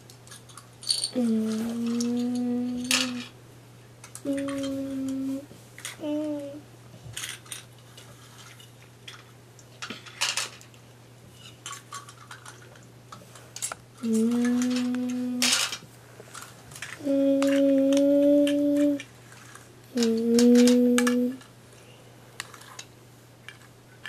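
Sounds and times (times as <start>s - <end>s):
plastic toys clicking and clattering: 0.1s - 3.3s, 4.0s - 5.2s, 7.2s - 10.8s, 11.6s - 12.8s, 13.6s - 21.5s, 22.4s - 24.0s
child humming: 1.2s - 3.4s, 4.2s - 6.6s, 14.0s - 15.6s, 17.0s - 19.1s, 19.9s - 21.4s.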